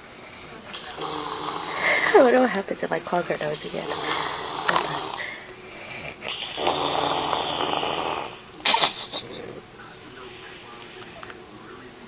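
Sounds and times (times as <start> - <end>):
woman snoring: 0.7 - 2.4, 3.4 - 8.4.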